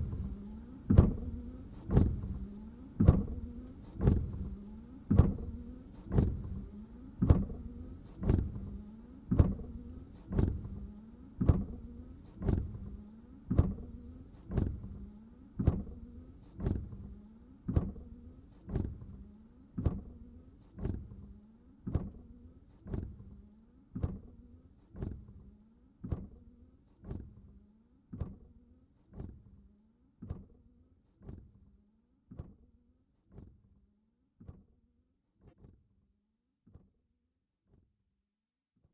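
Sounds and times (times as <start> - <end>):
windshield wipers sweeping: 0.0 - 29.4.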